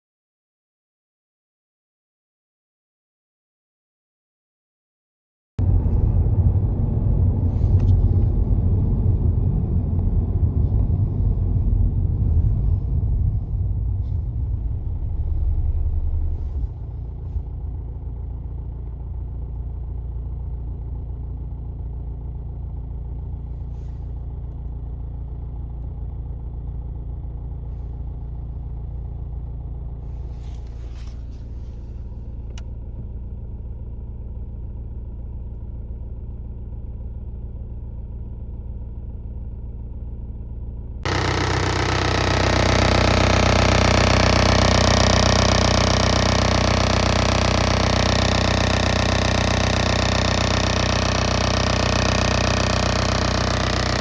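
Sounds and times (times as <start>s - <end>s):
diesel engine idling: 5.6s - 54.0s.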